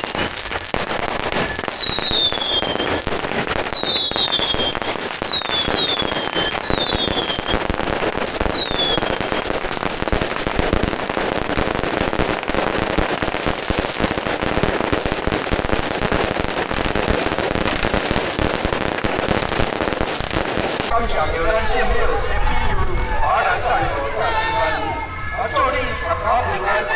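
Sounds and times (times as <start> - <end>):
firecrackers crackling: 0.0 - 23.8
short falling whistles: 1.4 - 3.0.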